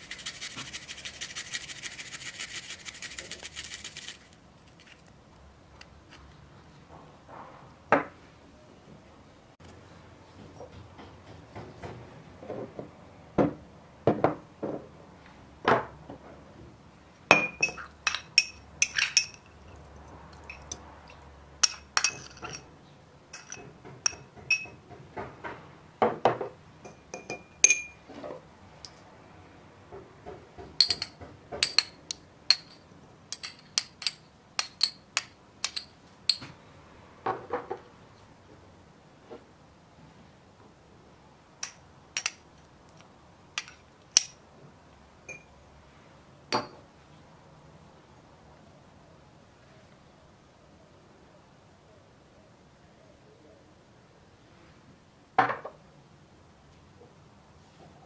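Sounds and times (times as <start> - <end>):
hard objects clinking: 17.4 - 22.7, 23.4 - 24.8, 30.8 - 36.4.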